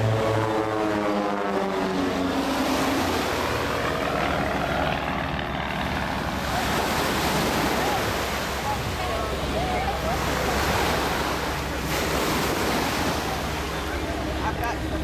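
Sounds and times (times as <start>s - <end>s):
propeller aircraft flying past: 0.0s - 15.0s
surf rushing: 0.0s - 15.0s.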